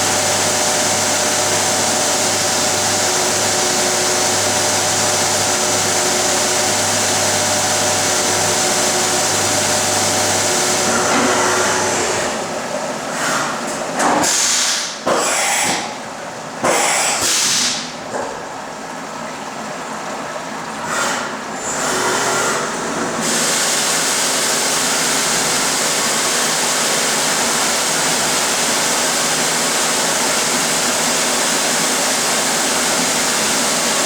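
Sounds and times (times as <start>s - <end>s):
machine hums: 0.0s - 13.0s.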